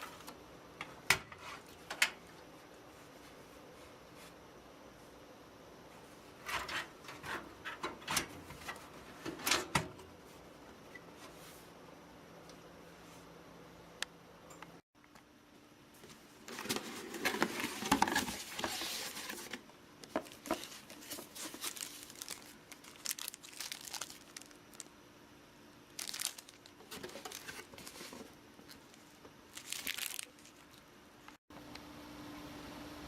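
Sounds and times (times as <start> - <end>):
faint steady hum: 0.0 - 33.0
plastic packaging crinkling: 16.5 - 24.9, 25.9 - 31.4.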